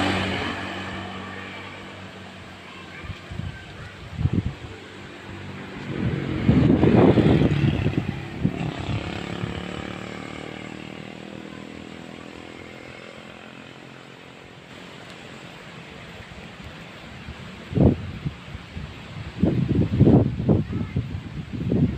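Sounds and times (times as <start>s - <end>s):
motorcycle passing by: 0.0s - 15.5s.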